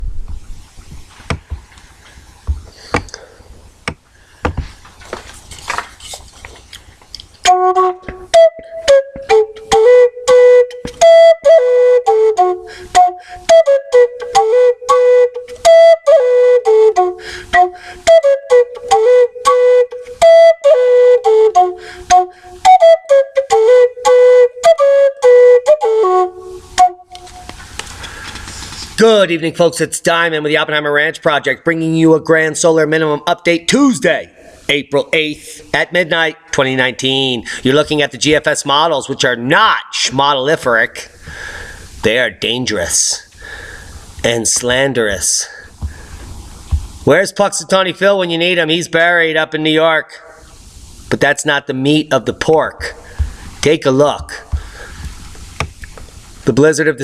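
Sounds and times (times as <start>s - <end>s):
woodwind-like melody over beat: 7.4s - 27.6s.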